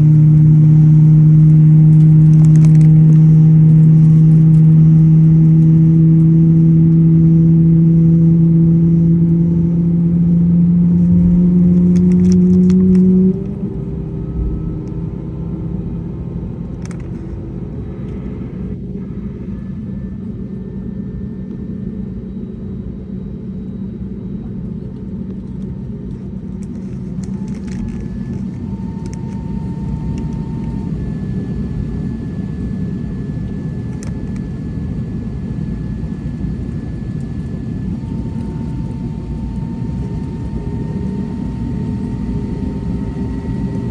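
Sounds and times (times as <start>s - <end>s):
jet engines humming: 0.0s - 43.9s
steady rumble: 0.0s - 43.9s.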